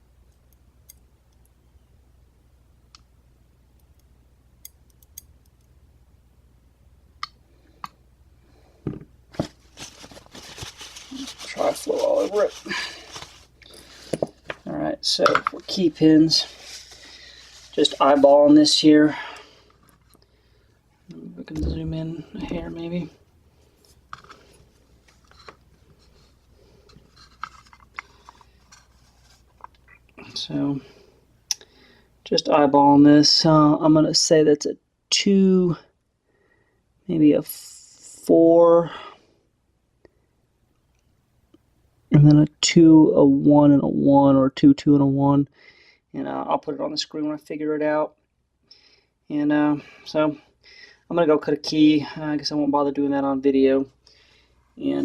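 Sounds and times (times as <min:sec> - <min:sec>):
clattering handling noise: 0:26.8 - 0:29.8.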